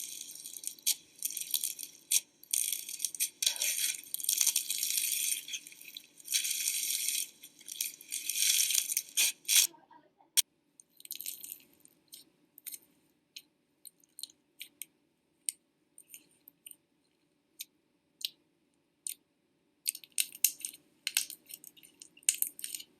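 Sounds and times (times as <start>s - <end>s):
slime sticky clicks and crackles: 0.0s - 9.7s, 19.8s - 22.9s.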